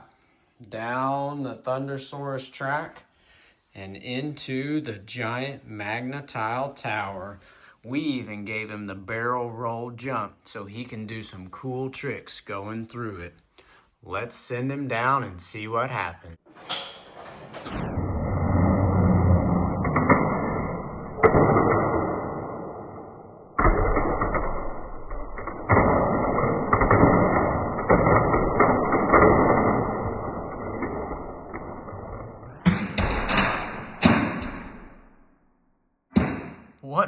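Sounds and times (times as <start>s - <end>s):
sharp knocks: 32.5s - 35.0s, 36.1s - 36.8s.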